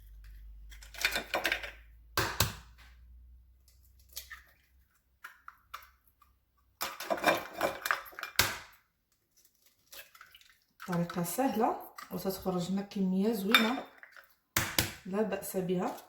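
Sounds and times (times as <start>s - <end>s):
eggs clicking and knocking in bowl: 0.1s - 2.7s, 3.7s - 8.8s.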